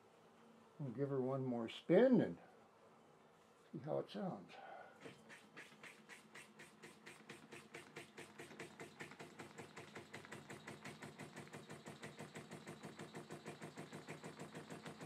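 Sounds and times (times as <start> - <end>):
model steam engine running: 6.1 - 15.0.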